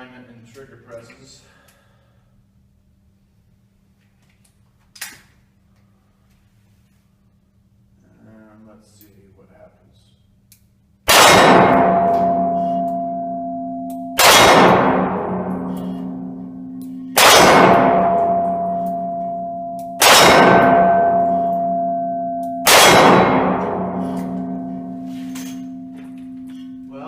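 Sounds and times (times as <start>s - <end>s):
steel target ringing: 11.1s - 27.0s.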